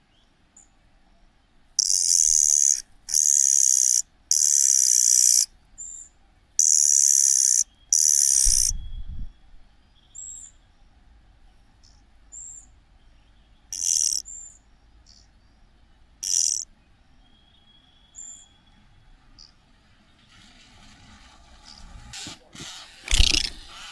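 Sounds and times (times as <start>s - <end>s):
young bird harsh begging calls: 1.8s - 5.5s, 6.6s - 8.8s, 13.7s - 14.2s, 16.2s - 16.6s, 23.1s - 23.9s.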